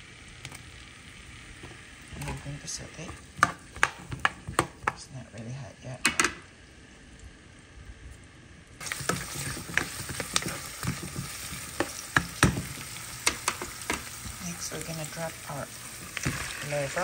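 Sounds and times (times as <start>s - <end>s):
onions sizzling in a pan: 0.0s - 5.0s, 8.8s - 17.0s
utensil scraping and tapping pan: 8.9s - 14.1s.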